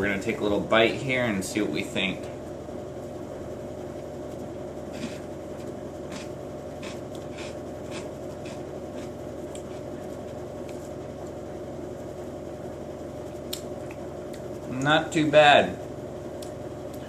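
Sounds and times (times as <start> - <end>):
steady background hum: 0.0 - 17.0
person chewing crunchy food: 4.9 - 5.2, 6.1 - 10.4.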